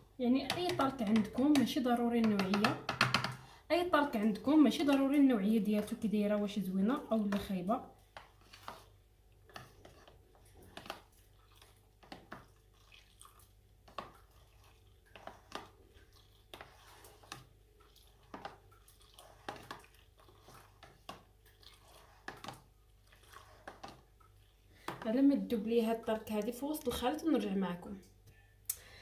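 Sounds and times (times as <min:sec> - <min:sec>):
spoon stirring and tapping: 0:00.4 - 0:03.4, 0:24.8 - 0:25.2.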